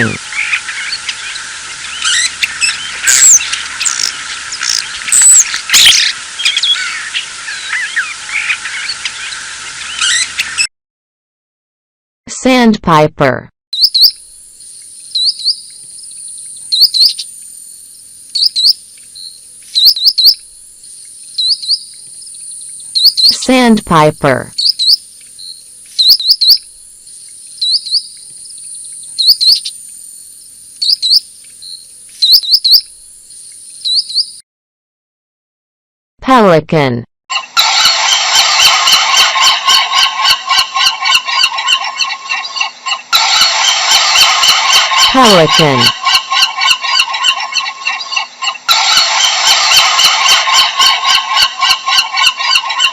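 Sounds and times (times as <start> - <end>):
sandpiper calling: 0.0 - 10.6, 13.8 - 17.4, 18.3 - 23.5, 24.6 - 26.6, 27.2 - 29.8, 30.8 - 32.9, 37.3 - 52.9
steady high hiss: 14.2 - 23.2, 24.6 - 33.9
pelicans calling harshly: 37.6 - 52.9.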